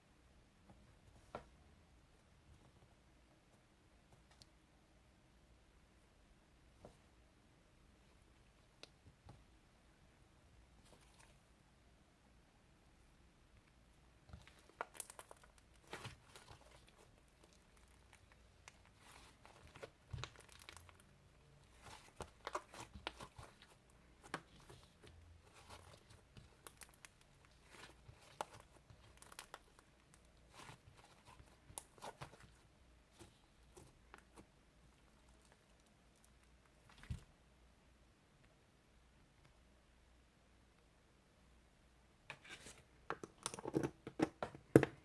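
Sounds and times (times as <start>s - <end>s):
crinkling and tearing: 14.3s - 34.4s.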